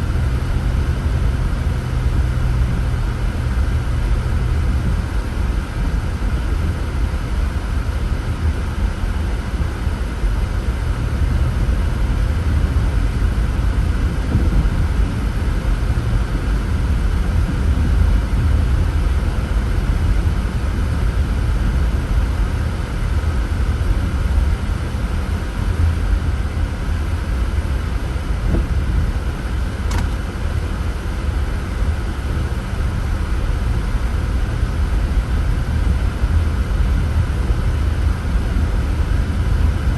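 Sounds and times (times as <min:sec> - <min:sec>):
car driving rumble: 0:00.0 - 0:39.9
faint brief click: 0:29.9 - 0:30.2.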